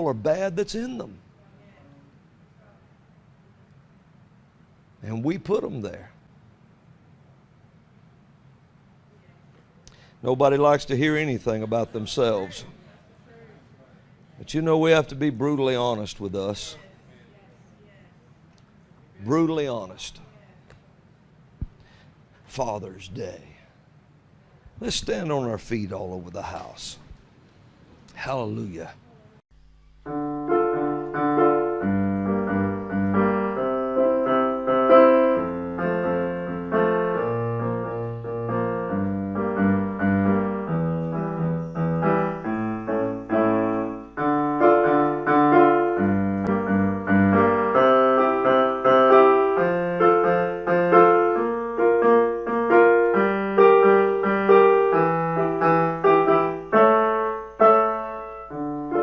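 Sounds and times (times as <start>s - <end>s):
piano music: 29.8s - 59.0s.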